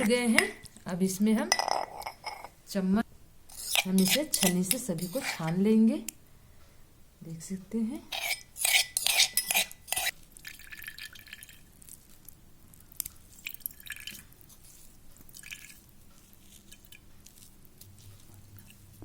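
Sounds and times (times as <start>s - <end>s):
juice dripping: 10.1s - 19.0s
soft scraping through a sieve: 15.6s - 19.0s.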